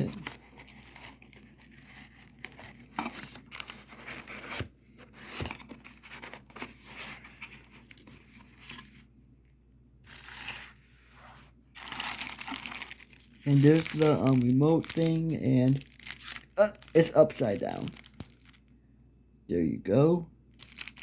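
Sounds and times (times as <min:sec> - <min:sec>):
packaging crinkling and tearing: 0:00.0 - 0:08.9, 0:11.8 - 0:18.7, 0:20.6 - 0:21.0.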